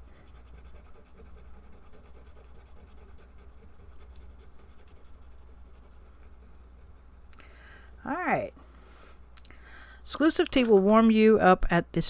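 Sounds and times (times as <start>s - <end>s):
low steady hum: 0.0s - 12.0s
paper card rustling: 10.2s - 11.2s.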